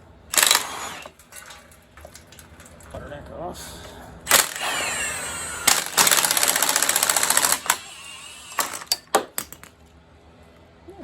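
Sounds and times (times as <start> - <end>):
sharp metal clicks: 0.3 - 2.4, 5.6 - 7.9, 8.5 - 9.7
impact wrench hammering: 4.3 - 9.7.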